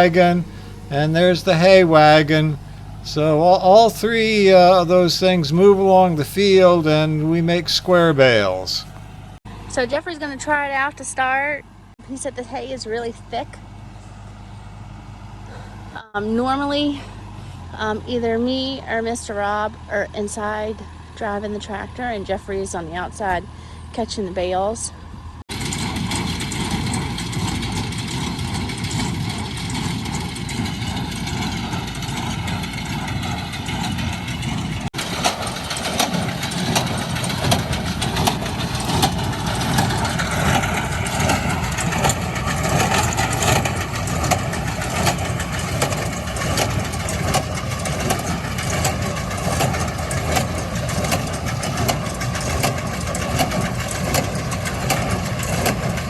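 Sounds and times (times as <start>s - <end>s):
baler mechanical clatter: 0.0s - 9.8s, 25.5s - 56.0s
tractor diesel engine running: 0.0s - 56.0s.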